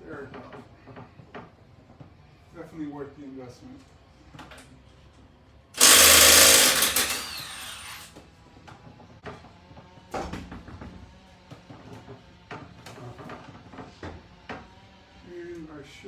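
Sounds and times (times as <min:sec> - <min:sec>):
impact wrench whirring: 0:05.8 - 0:08.1
metal parts clanking: 0:05.8 - 0:08.1.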